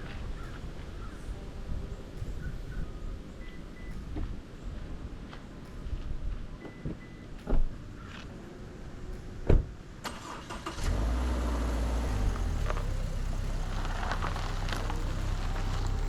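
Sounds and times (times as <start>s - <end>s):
car engine starting and running: 9.4s - 16.0s.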